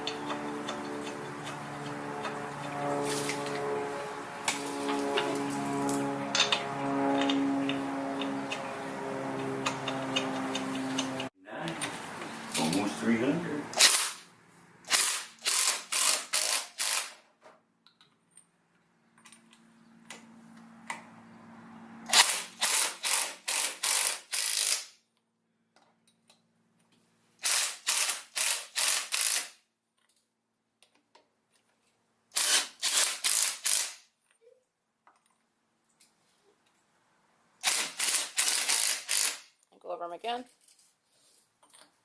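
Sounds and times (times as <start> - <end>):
impact wrench hammering rattles: 37.6 - 39.4.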